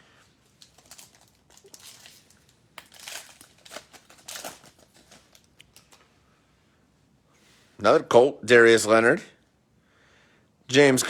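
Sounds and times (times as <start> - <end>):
wrapper being torn and crinkled: 0.4 - 6.1.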